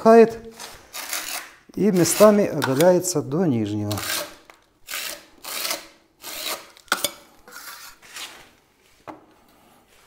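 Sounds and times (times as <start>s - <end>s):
spatula scraping wet plaster: 0.3s - 3.2s, 3.8s - 8.6s.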